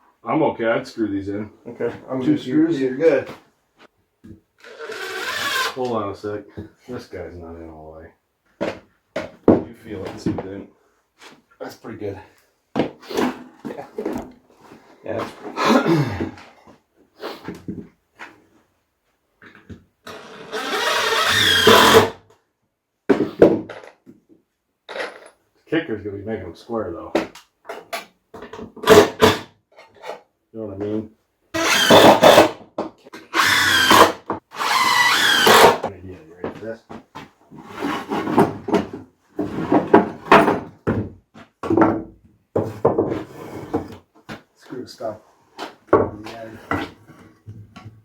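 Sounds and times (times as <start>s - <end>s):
power drill driving a screw: 4.6s - 5.8s, 20.1s - 22.2s, 31.6s - 32.5s, 33.3s - 35.8s
wooden boards knocking and scraping: 8.6s - 10.5s, 36.4s - 44.5s.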